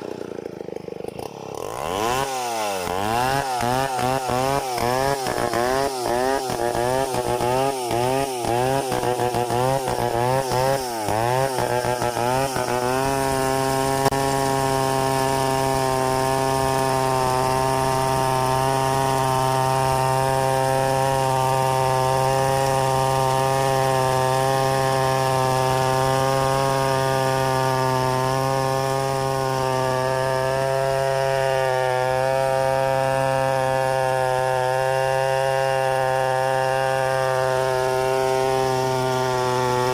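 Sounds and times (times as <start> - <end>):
chainsaw running: 0.0 - 39.9.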